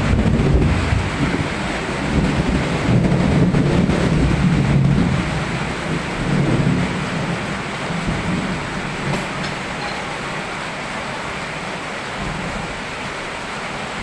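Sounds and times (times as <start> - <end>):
steady rain: 0.0 - 14.0.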